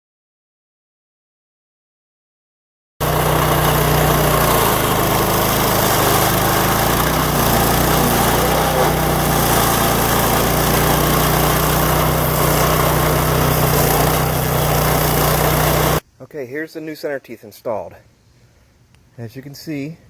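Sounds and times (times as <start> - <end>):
small gas engine running: 3.0 - 16.0.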